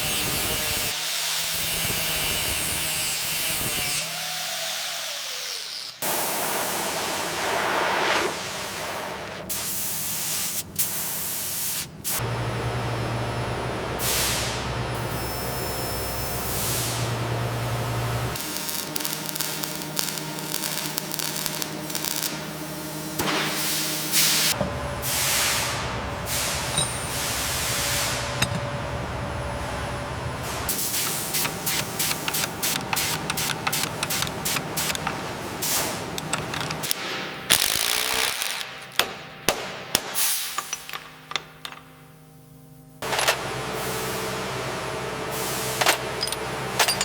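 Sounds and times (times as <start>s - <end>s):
spraying hiss: 6.0s - 12.2s.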